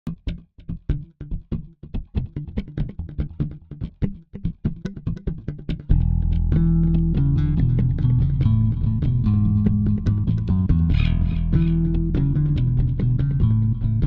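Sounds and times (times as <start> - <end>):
short plucked notes: 5.7 - 14.0.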